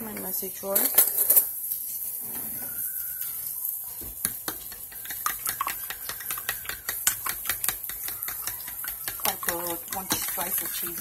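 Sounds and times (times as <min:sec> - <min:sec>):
utensils clattering: 0:00.1 - 0:01.6, 0:04.6 - 0:11.0
metal utensil beating eggs in bowl: 0:03.9 - 0:11.0.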